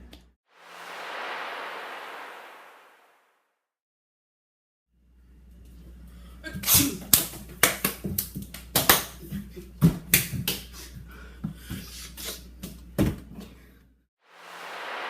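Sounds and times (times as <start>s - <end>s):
hiss: 0.6s - 3.1s, 14.3s - 15.0s.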